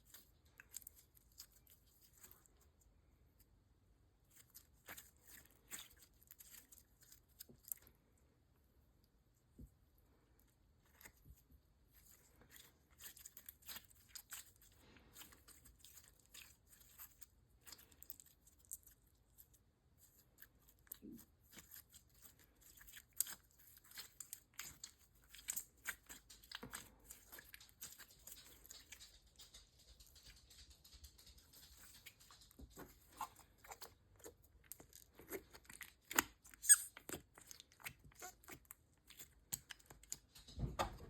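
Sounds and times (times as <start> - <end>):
slime squishing clicks and crackles: 12.0 - 41.0.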